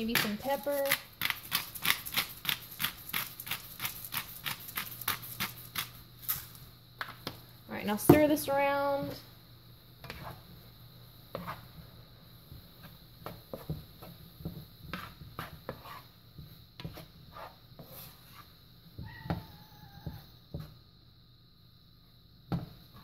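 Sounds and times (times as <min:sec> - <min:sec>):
spoon scraping a pan: 0:10.0 - 0:10.4, 0:11.3 - 0:11.7, 0:12.8 - 0:16.2, 0:16.8 - 0:18.6.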